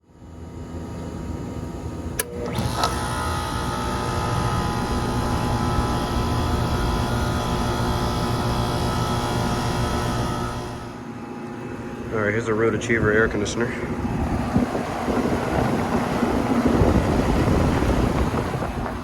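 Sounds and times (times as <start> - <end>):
air conditioner running hum: 0.0 - 19.0
air conditioner clicks: 2.1 - 10.6.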